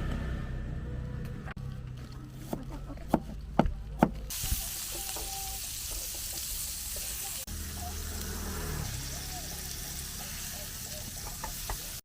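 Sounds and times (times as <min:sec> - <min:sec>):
food sizzling as it fries: 0:04.3 - 0:12.0.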